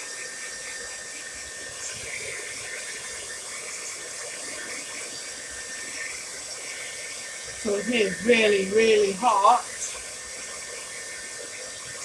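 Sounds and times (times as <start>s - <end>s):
hair dryer blowing air: 0.0s - 12.0s.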